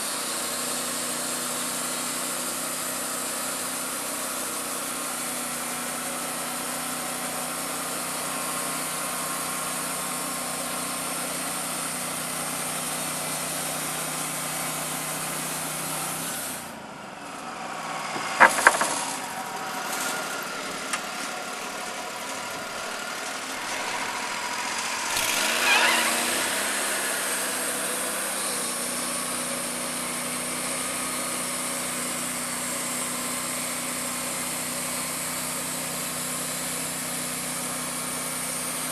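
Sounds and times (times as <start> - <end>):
sawmill engine running: 0.0 - 38.9.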